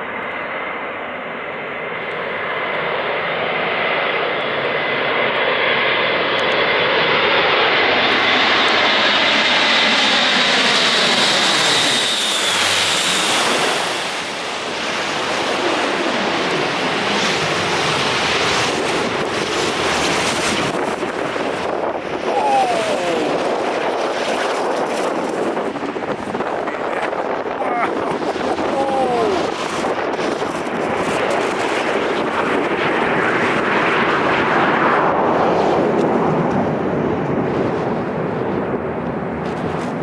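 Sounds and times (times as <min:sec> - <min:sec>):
aircraft engine whine dropping in pitch: 0:00.0 - 0:22.2, 0:23.2 - 0:40.0
turboprop aircraft drone: 0:00.0 - 0:40.0.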